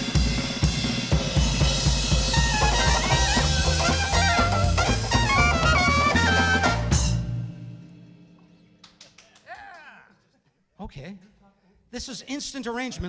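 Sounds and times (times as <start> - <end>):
jazz band playing: 0.0 - 8.2
cymbal crash ringing: 0.0 - 8.8.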